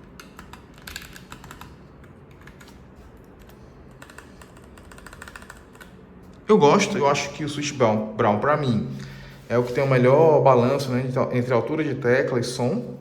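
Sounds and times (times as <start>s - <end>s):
mechanical keyboard typing: 0.0s - 6.0s.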